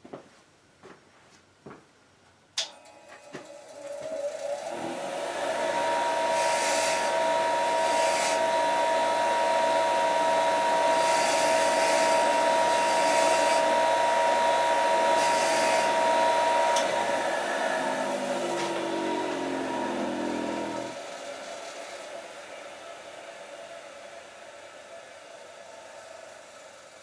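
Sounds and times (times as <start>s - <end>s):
bench grinder whining: 3.2s - 22.2s
grinder winding down: 3.7s - 21.1s
metal screw grinding on wheel: 15.1s - 16.0s.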